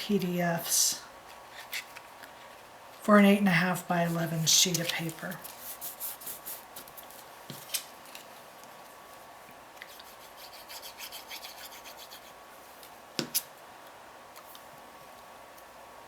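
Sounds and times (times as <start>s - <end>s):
quick scratchy strokes: 9.9s - 12.4s.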